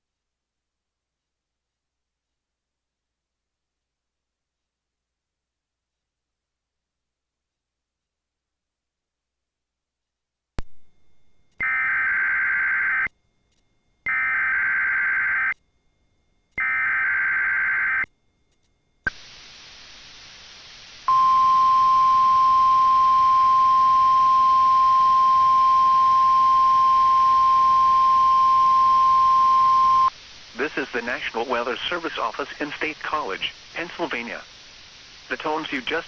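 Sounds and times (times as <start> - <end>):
radio hiss: 19.1 - 36.0.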